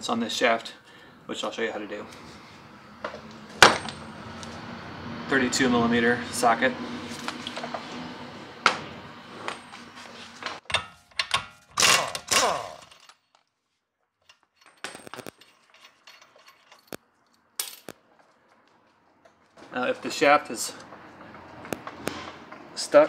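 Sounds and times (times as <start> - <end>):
metal parts clicking and knocking: 10.6 - 13.4, 14.2 - 18.0.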